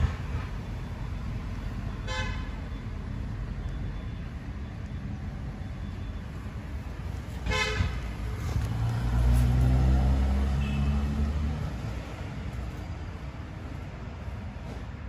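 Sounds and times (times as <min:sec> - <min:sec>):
car horn toot: 0:02.0 - 0:02.6, 0:07.5 - 0:08.0, 0:10.5 - 0:11.0
vehicle engine rumble passing: 0:05.2 - 0:15.0.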